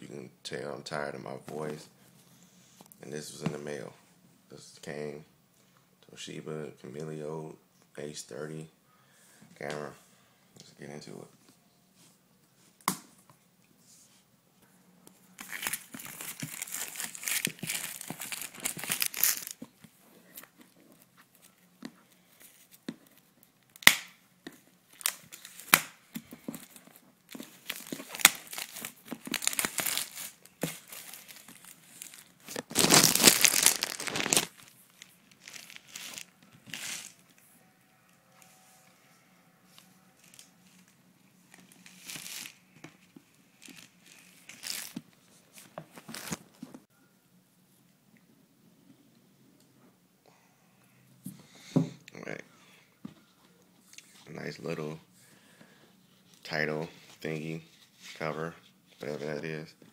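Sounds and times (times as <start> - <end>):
packaging crinkling and rustling: 15.4 - 21.6, 24.9 - 37.2, 41.5 - 46.8.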